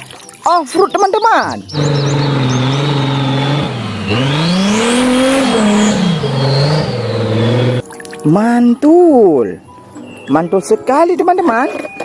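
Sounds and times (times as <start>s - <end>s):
car engine idling and revving: 1.7s - 7.8s
high engine whine: 1.7s - 7.8s.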